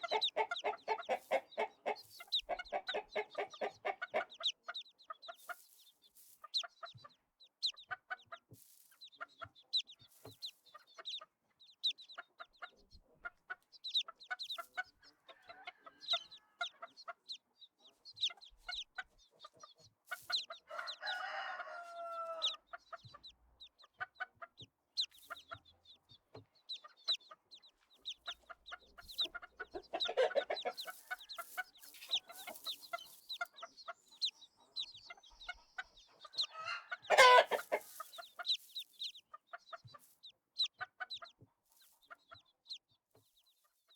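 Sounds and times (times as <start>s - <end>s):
chickens clucking: 0.0s - 43.9s
rooster crowing: 20.7s - 22.6s, 36.5s - 37.6s.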